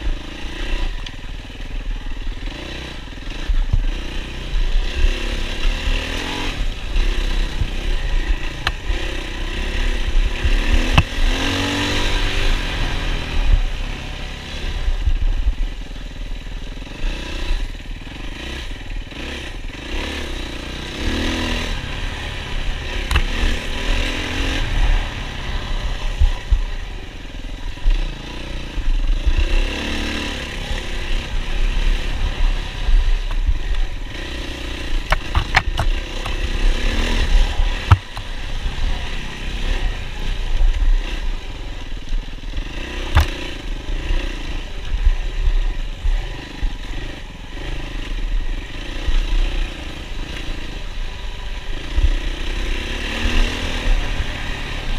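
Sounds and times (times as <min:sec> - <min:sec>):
dirt bike engine revving: 0:00.0 - 0:54.9
heavy low rumble: 0:30.5 - 0:49.4.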